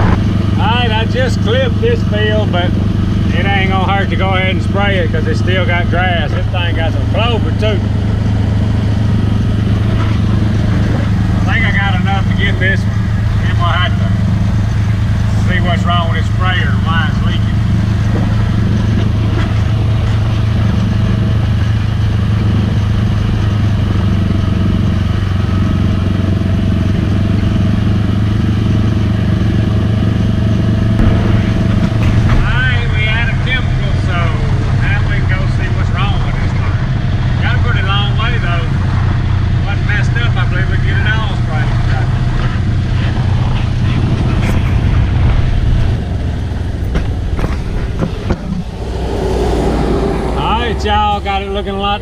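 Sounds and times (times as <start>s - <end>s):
vehicle engine droning: 0.0s - 52.0s.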